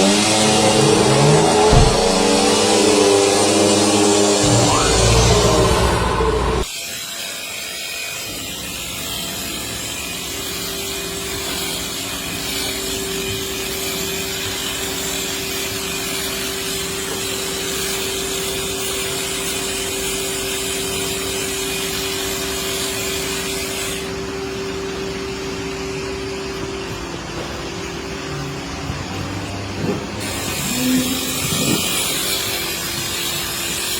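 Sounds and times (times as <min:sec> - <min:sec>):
machine motor humming: 0:00.0 - 0:06.7.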